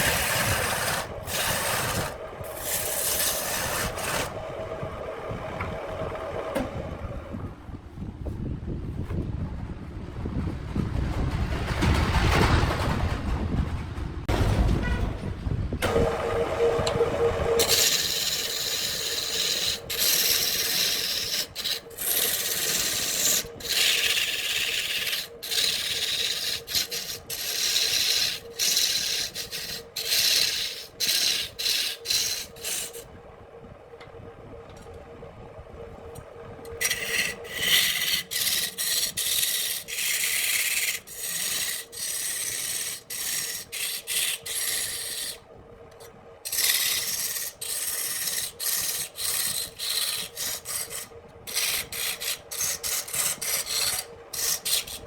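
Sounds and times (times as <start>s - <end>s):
tool scraping spinning wood: 0.0s - 7.4s, 15.8s - 33.1s, 36.5s - 55.0s
lathe hum: 0.0s - 8.0s, 15.8s - 55.0s
low rumbling noise: 0.0s - 20.0s.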